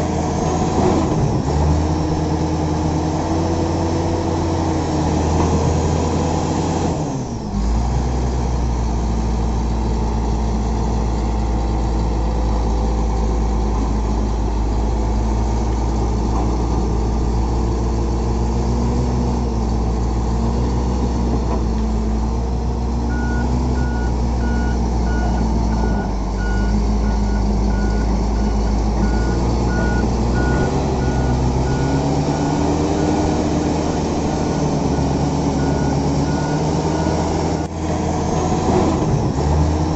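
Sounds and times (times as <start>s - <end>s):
bulldozer diesel engine running: 0.0s - 39.9s
reversing alarm beeping: 23.1s - 33.4s, 34.3s - 37.7s.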